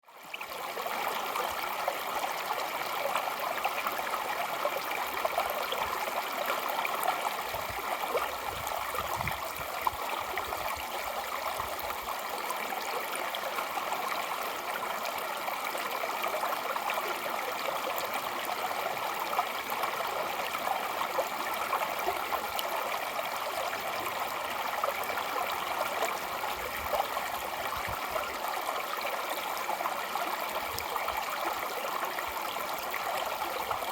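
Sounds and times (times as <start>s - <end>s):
stream rushing over rocks: 0.6s - 33.9s.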